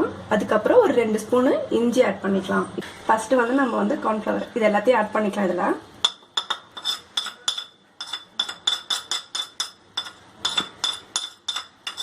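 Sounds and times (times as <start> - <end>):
spoon clinking against a bowl: 6.0 - 12.0.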